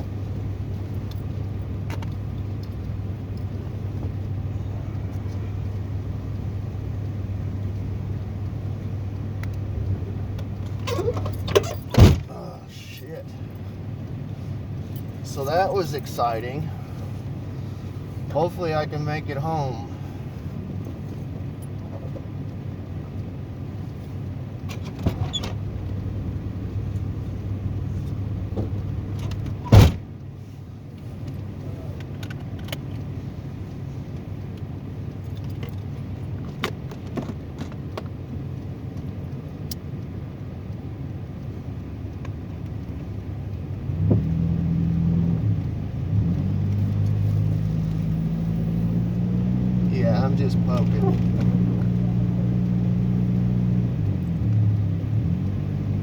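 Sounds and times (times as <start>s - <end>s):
car engine and road noise: 0.0s - 56.0s
loud thump: 11.9s - 12.3s
light clicks and rattles: 30.9s - 43.8s.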